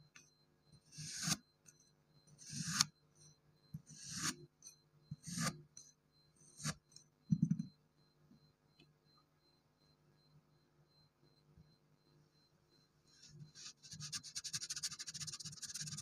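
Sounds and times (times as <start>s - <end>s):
blade cutting kinetic sand: 2.4s - 2.9s, 13.7s - 16.0s.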